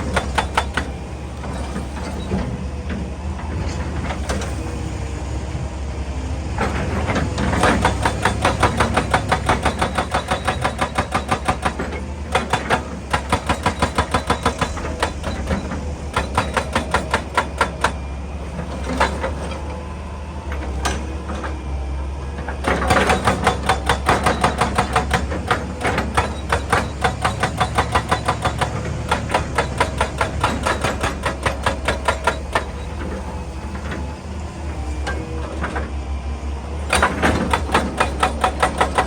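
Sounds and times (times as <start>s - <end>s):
hydraulic breaker hammering rock: 0.0s - 1.0s, 6.6s - 19.6s, 22.4s - 34.1s, 36.9s - 39.0s
excavator engine drone: 0.0s - 39.0s.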